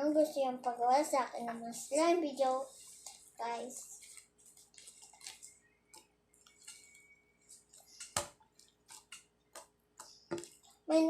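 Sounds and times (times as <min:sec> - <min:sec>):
slime squishing with wet pops: 0:04.3 - 0:10.9.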